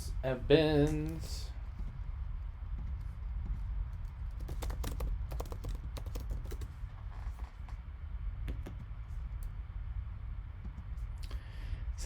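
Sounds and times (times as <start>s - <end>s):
low steady hum: 0.0s - 12.0s
light clicks and taps at desk: 8.5s - 9.6s.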